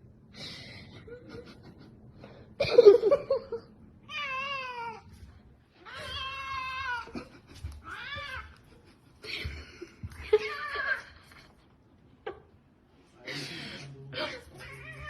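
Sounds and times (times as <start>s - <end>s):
cat meowing: 4.1s - 5.1s, 14.6s - 15.0s.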